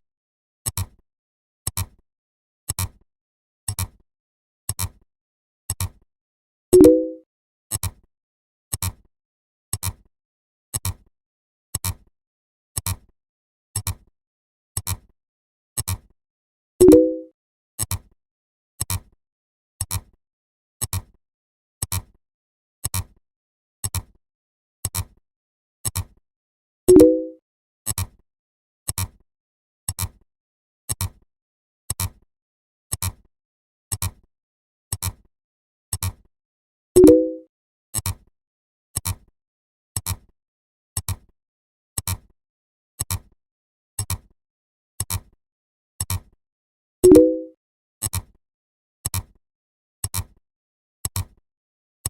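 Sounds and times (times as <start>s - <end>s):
pitched tone: 6.8s - 7.2s, 16.8s - 17.3s, 26.9s - 27.4s, 37.0s - 37.4s, 47.0s - 47.5s.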